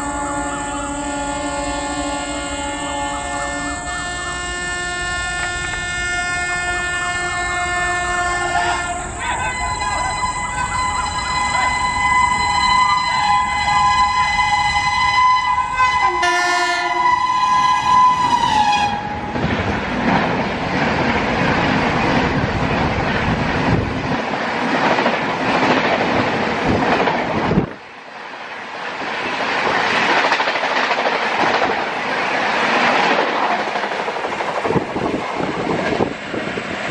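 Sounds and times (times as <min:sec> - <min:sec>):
train horn blaring: 0:00.0 - 0:19.7
train rushing past: 0:00.0 - 0:36.9.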